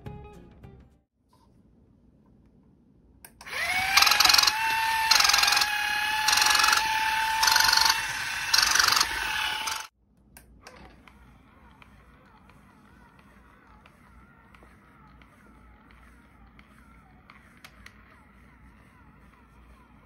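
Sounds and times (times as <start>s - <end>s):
toy electric motor whine: 3.4s - 9.9s
toy gears clattering: 3.6s - 9.9s.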